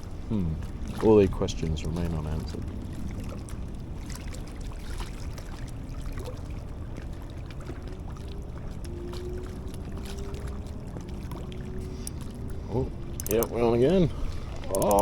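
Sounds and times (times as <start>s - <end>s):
faint hum: 0.0s - 15.0s
steady low rumble: 0.0s - 15.0s
water lapping and trickling: 0.0s - 15.0s
faint clicks: 13.1s - 13.6s, 14.7s - 15.0s.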